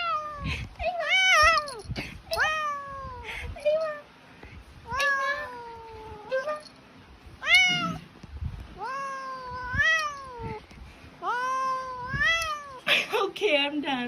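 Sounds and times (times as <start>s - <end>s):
cat meowing: 4.9s - 6.6s, 7.4s - 8.1s, 8.8s - 10.6s, 11.2s - 12.8s.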